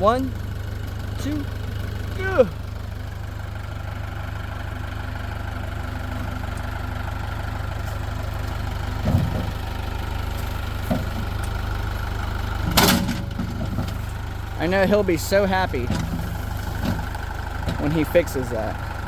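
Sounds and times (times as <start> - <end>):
tractor engine idling: 0.0 - 19.0
metal clank: 12.6 - 14.1.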